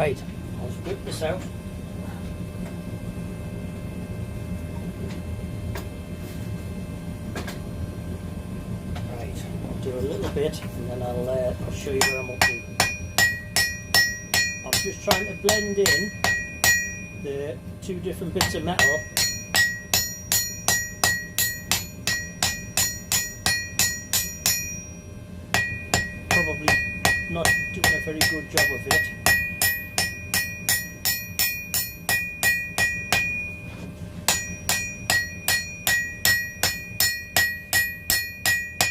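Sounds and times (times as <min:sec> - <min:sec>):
gas forge burner rumbling: 0:00.0 - 0:38.9
hammer striking steel on anvil: 0:11.8 - 0:17.4, 0:18.4 - 0:33.7, 0:34.3 - 0:38.9.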